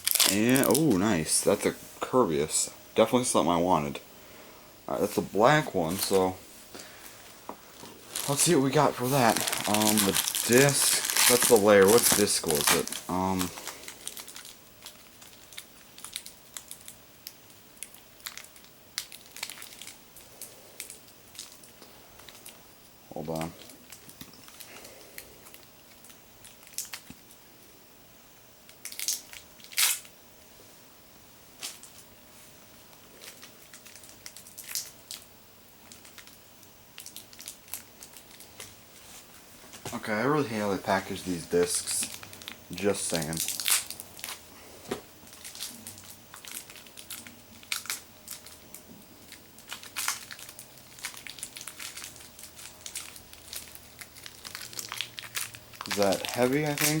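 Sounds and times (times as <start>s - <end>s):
packaging clicks and crinkles: 0.0s - 1.6s, 5.8s - 7.1s, 7.7s - 22.6s, 23.3s - 27.3s, 28.7s - 30.1s, 32.9s - 36.4s, 37.0s - 38.8s, 40.8s - 57.0s
loud crackling rustles: 7.7s - 14.5s.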